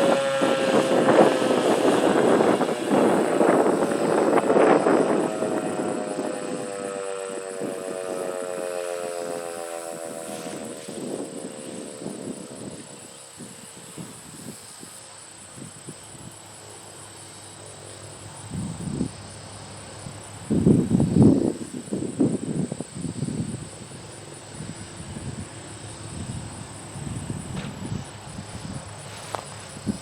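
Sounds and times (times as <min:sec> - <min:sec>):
siren winding down: 0:00.0 - 0:12.7
wind buffeting microphone: 0:00.0 - 0:15.0, 0:18.5 - 0:19.2, 0:20.0 - 0:30.0
insects chirring: 0:00.0 - 0:30.0.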